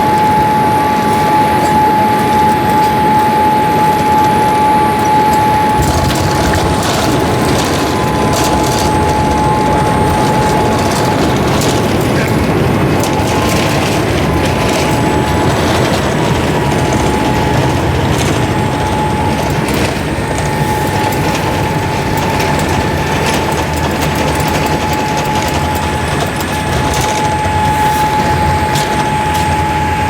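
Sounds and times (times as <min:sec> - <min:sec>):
airliner engine and airflow noise: 0:00.0 - 0:30.0
cabin fittings rattling: 0:05.8 - 0:29.7.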